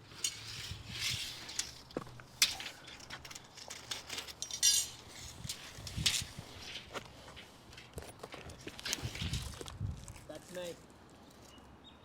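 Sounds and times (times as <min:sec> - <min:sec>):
hand tools clinking on concrete: 0:00.0 - 0:07.5.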